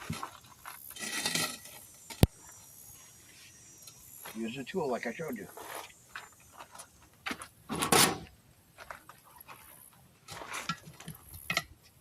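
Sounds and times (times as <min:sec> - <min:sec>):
metal tool scraping tire rim: 0:00.9 - 0:02.3.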